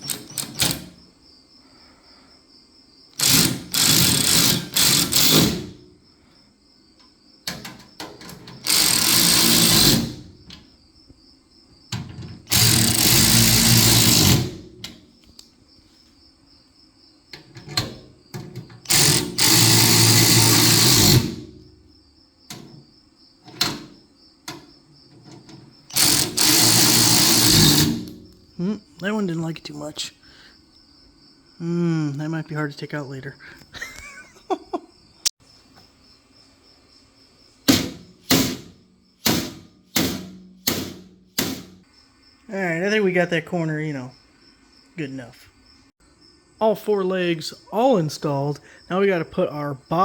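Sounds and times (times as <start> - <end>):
power drill driving screws: 3.2 - 5.8, 8.6 - 10.2, 12.5 - 14.6, 18.9 - 21.5, 25.9 - 28.2.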